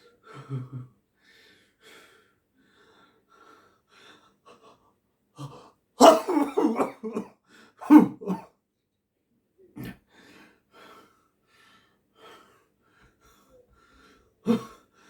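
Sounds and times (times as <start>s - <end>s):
faint breaths: 0.0s - 5.0s, 10.0s - 15.0s
person coughing: 6.0s - 8.5s.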